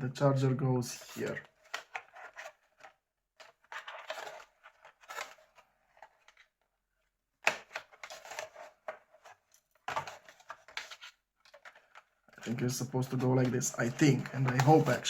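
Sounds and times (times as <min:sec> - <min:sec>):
cardboard box rustling: 0:07.7 - 0:15.0.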